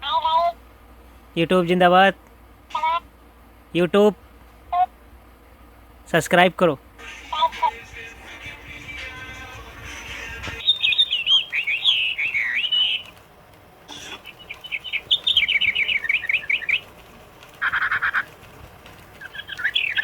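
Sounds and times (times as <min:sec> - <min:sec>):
parrot chirping: 0:09.0 - 0:13.2, 0:13.9 - 0:17.0, 0:17.6 - 0:18.4, 0:19.2 - 0:20.0
parrot squawk: 0:17.6 - 0:18.3.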